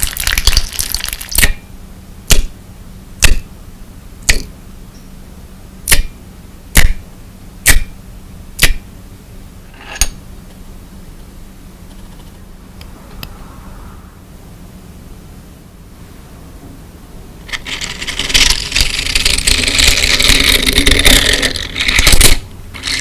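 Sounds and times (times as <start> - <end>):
slime crackling: 0.0 - 1.5.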